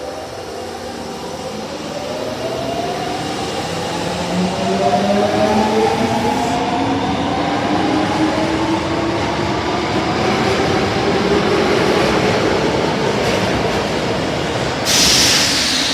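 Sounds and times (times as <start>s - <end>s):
subway train motors whining: 0.0s - 15.9s
rush of hiss: 14.4s - 15.9s.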